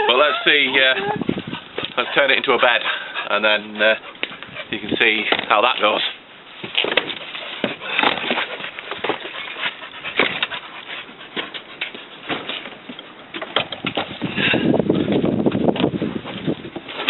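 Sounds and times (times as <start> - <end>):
seat and boards clunking: 12.2 - 14.2.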